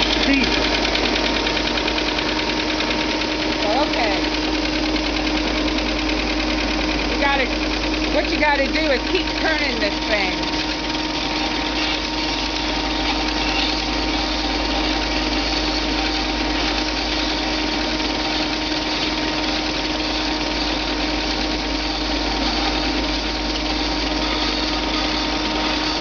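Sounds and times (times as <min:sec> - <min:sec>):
belt sander running: 0:00.0 - 0:26.0
stick sanding against belt: 0:08.2 - 0:26.0.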